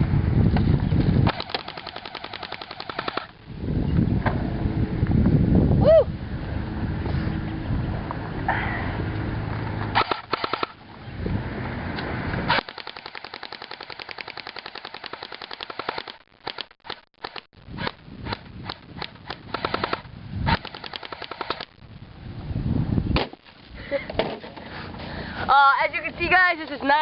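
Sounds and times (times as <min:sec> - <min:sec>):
airsoft rifles firing: 0:01.3 - 0:03.4, 0:10.0 - 0:10.8, 0:12.5 - 0:21.8.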